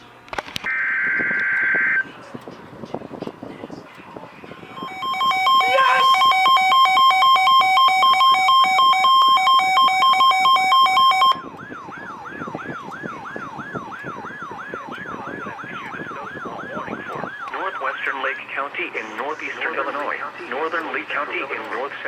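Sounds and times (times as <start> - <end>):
two-tone alert alarm: 0.7 - 2.1, 4.8 - 18.4
warbling tone falling in pitch: 4.8 - 9.6.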